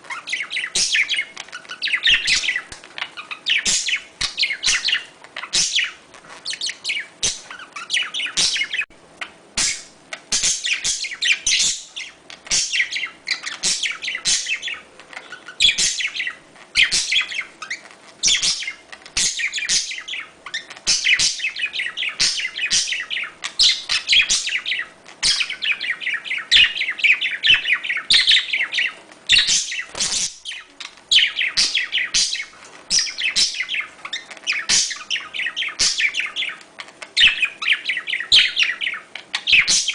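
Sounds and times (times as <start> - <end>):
budgerigars chirping and warbling: 0.0 - 39.9.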